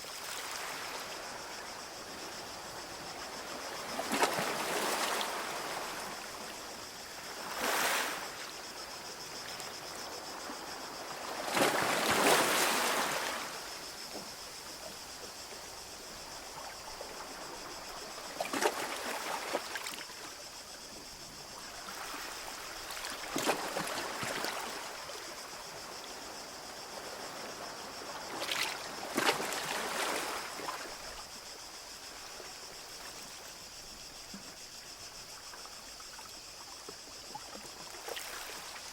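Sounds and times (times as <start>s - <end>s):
small waves breaking on beach: 0.0s - 14.7s, 21.6s - 31.2s, 35.4s - 38.9s.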